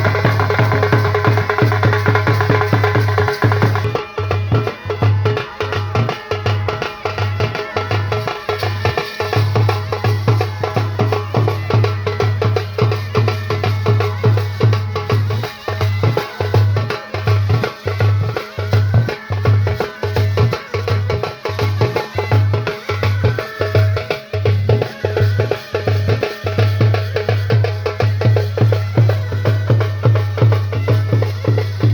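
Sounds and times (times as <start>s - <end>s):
loud drum-heavy band music: 0.0s - 31.9s.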